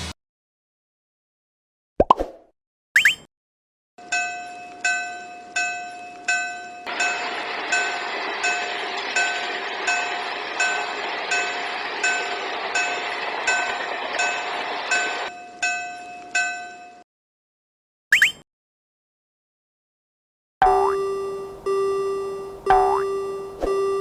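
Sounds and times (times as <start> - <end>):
railroad crossing bell ringing: 4.0 - 17.0
train passing: 6.6 - 15.4.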